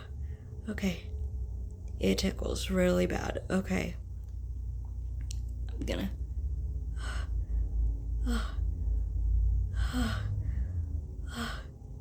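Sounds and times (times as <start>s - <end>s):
steady low rumble: 0.0s - 12.0s
woman gasping breaths: 6.9s - 9.0s, 9.7s - 11.9s.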